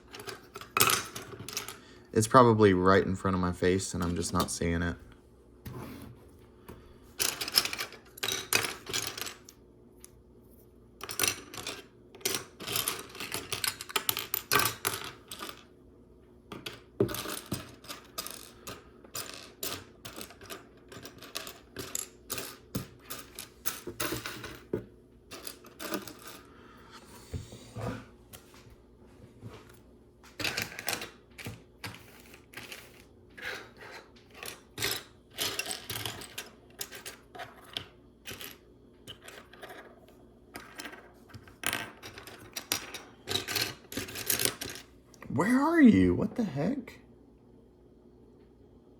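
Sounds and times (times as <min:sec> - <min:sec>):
plastic pieces clicking and clattering: 0:07.2 - 0:09.6, 0:11.0 - 0:15.7, 0:16.5 - 0:24.6, 0:34.3 - 0:39.9, 0:40.6 - 0:44.9.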